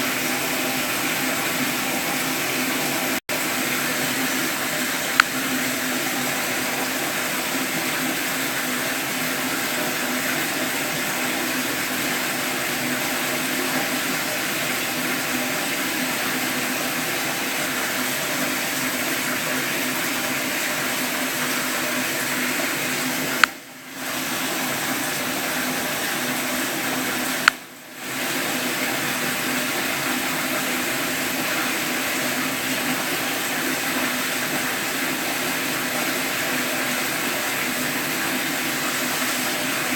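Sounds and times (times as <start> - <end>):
running water rushing: 0.0 - 39.9
sharp click: 27.4 - 27.6.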